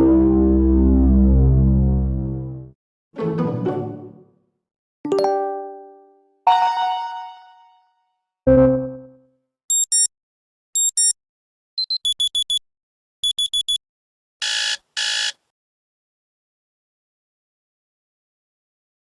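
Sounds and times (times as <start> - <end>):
short high phone beeps: 9.7 - 10.1, 10.8 - 11.1, 11.8 - 12.6, 13.2 - 13.8
buzzy phone tones: 14.4 - 15.4.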